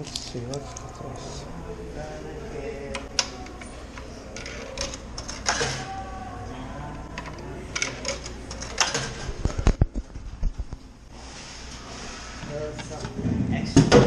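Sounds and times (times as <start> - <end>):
vending machine clicks and clatter: 4.4 - 5.9, 7.2 - 9.8.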